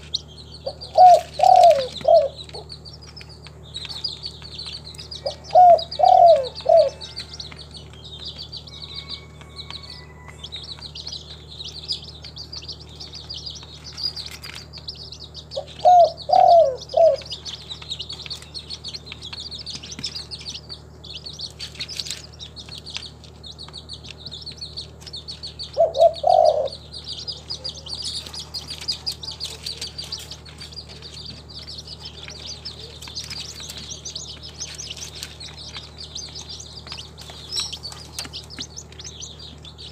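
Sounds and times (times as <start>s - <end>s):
small birds chirping: 0.0s - 39.9s
dove cooing: 0.6s - 2.7s, 5.2s - 7.4s, 15.6s - 17.5s, 25.7s - 30.4s.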